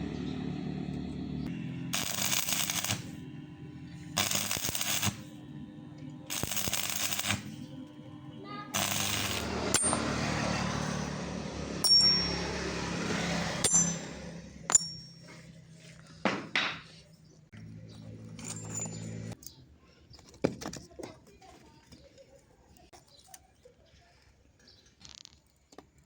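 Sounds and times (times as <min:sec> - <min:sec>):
low hum: 0:00.0 - 0:16.2
steel struck with metallic ring: 0:08.8 - 0:10.6, 0:11.8 - 0:12.9, 0:13.6 - 0:15.3
faint knocks and clinks: 0:17.9 - 0:19.6.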